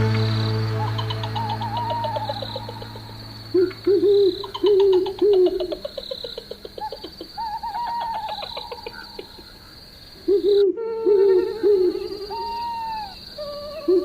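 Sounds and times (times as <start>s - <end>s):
steady high-pitched tone: 0.0s - 5.0s
owl hooting: 0.8s - 14.0s.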